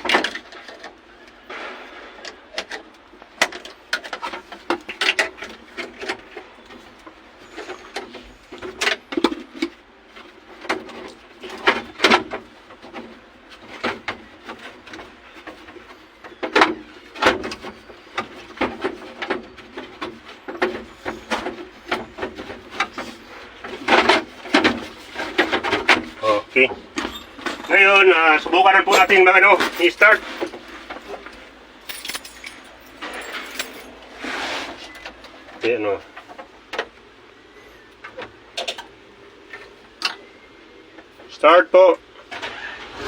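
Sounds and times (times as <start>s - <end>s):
tools and metal parts clicking: 26.9s - 27.8s, 28.9s - 34.1s.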